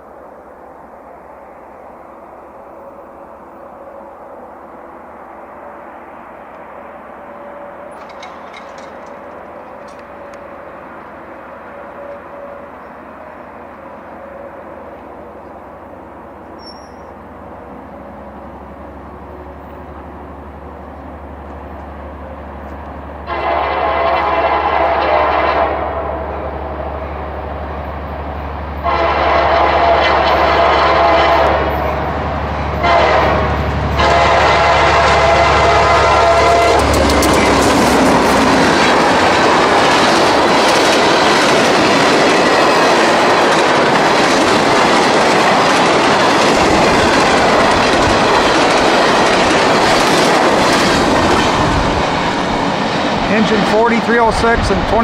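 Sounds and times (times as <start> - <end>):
diesel locomotive engine rumble: 0.0 - 55.0
wheels clattering on rails: 7.9 - 10.5, 36.6 - 55.0
train horn: 11.6 - 15.2, 23.2 - 27.3, 28.8 - 38.4.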